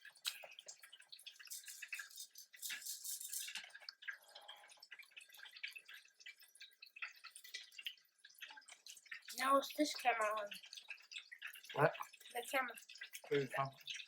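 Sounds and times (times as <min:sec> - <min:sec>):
wet chewing mouth sounds: 0:00.1 - 0:01.6.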